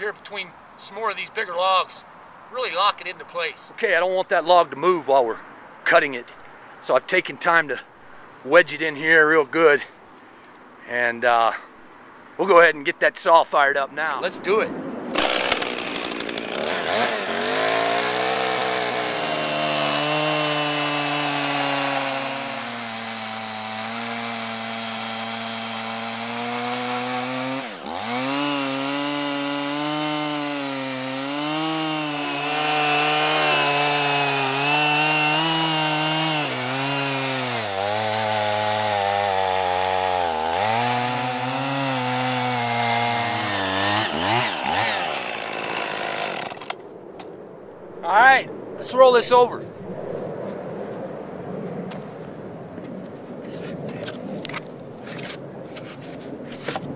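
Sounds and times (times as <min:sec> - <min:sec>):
chainsaw cutting log: 0:15.1 - 0:46.8.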